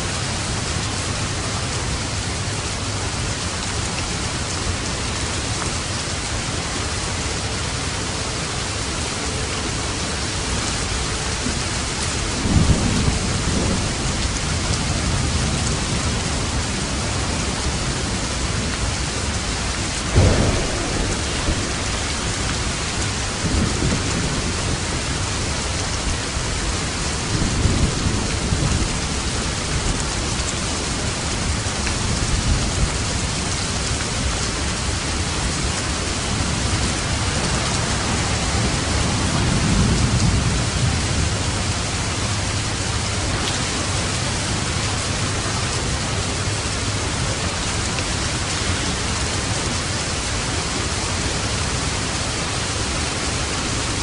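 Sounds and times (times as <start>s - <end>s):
heavy rain: 0.0s - 54.0s
thunder rumbling: 12.3s - 30.4s, 31.1s - 47.7s
sharp thunder crack: 20.0s - 25.0s.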